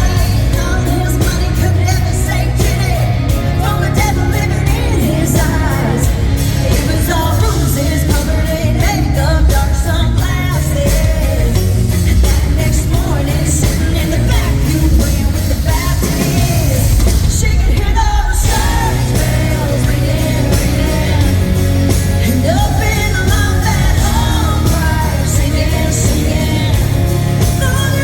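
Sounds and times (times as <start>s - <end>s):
live country band playing: 0.0s - 28.0s
woman singing: 0.0s - 28.0s.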